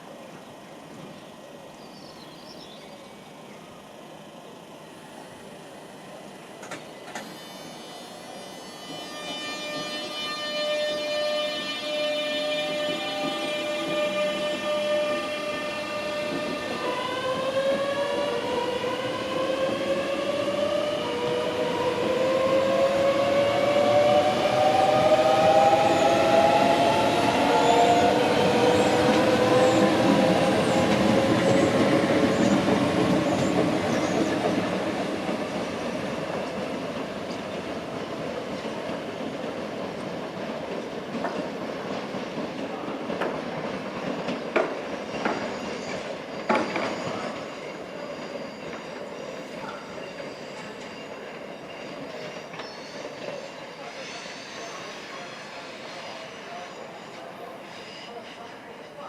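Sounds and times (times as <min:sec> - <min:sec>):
electric train motor whine: 0:00.1 - 0:35.9.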